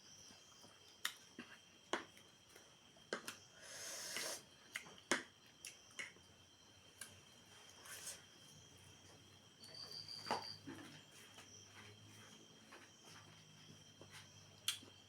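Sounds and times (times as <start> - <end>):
faint steady high tone: 9.0 - 12.3.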